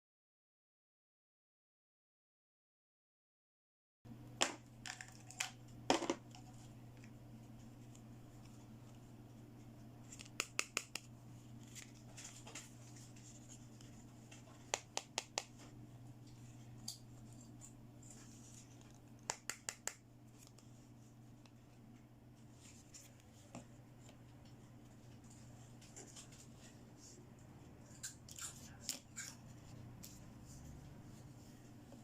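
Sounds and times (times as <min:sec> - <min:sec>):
steady low hum: 0:04.1 - 0:32.0.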